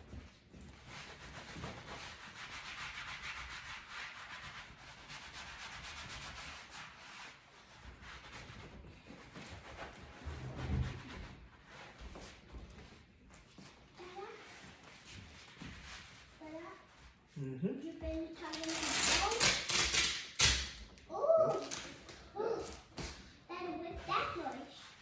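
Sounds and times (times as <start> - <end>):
cloth rubbing on leather: 0.0 - 17.4.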